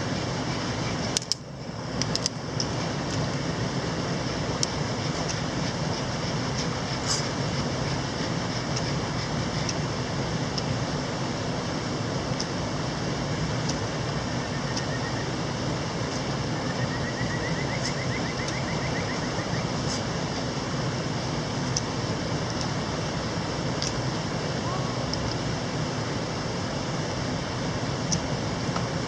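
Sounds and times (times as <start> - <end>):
mountain stream rushing: 0.0 - 29.0
faint rapid chirping: 14.2 - 15.4, 16.4 - 20.0.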